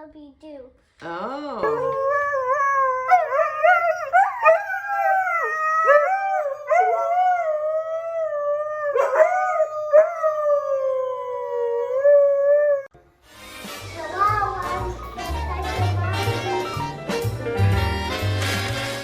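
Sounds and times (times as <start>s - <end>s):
dog howling: 1.6s - 12.9s.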